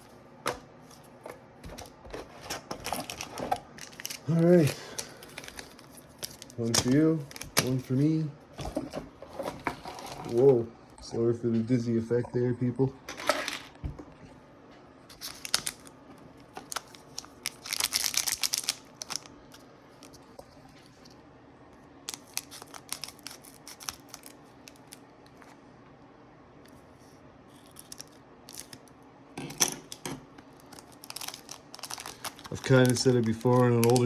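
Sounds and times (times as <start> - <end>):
cards ticking and rustling: 2.6 - 8.0, 15.1 - 20.7, 22.1 - 25.0, 30.4 - 34.0
foil packs tearing: 2.7 - 7.8, 16.6 - 19.3, 22.1 - 24.9, 30.6 - 34.0.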